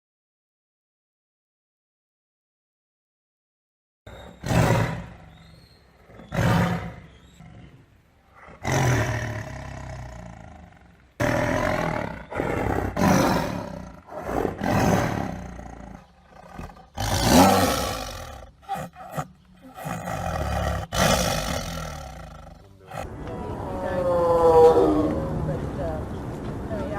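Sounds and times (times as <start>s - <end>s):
big cat roaring: 4.2s - 5.4s, 6.0s - 25.4s.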